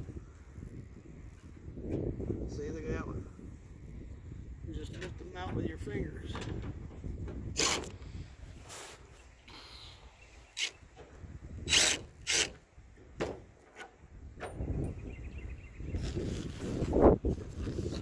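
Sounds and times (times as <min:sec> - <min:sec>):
wind rumble on microphone: 0:00.0 - 0:18.0.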